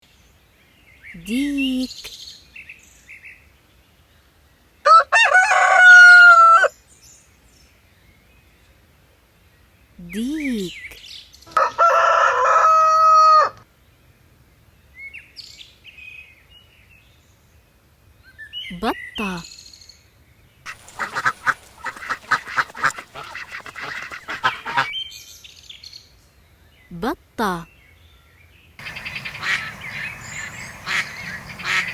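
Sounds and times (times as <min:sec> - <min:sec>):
rooster crowing: 0:04.9 - 0:06.6, 0:11.6 - 0:13.5
duck quacking: 0:20.7 - 0:24.9, 0:29.3 - 0:29.8, 0:30.8 - 0:31.9.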